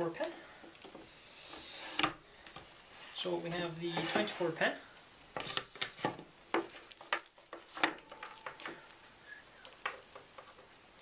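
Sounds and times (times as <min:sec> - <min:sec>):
plastic connectors clicking: 0:05.4 - 0:11.0.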